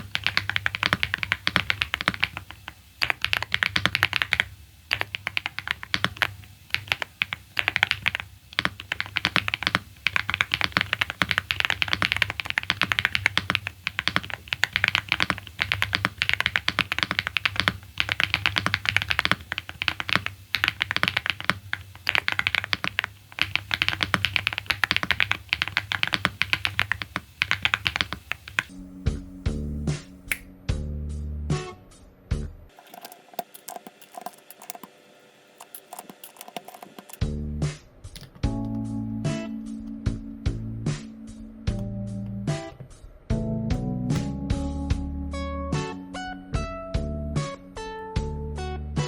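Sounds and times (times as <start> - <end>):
mechanical keyboard typing: 0.0 - 28.7, 32.8 - 34.9, 35.6 - 37.2.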